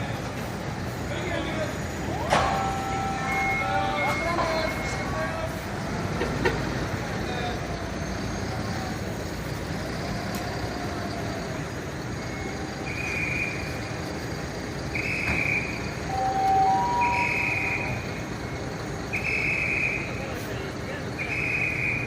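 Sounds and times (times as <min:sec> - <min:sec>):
vehicle engine and traffic noise: 0:00.0 - 0:22.0
electronic warning beeps: 0:02.0 - 0:05.6, 0:15.0 - 0:20.2.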